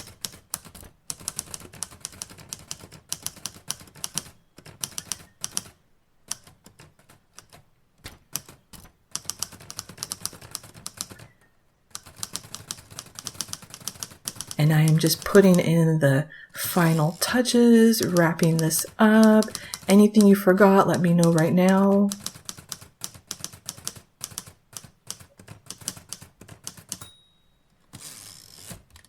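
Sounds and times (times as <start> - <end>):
typewriter keys clacking: 0.0 - 11.3, 11.9 - 15.7, 16.8 - 27.1.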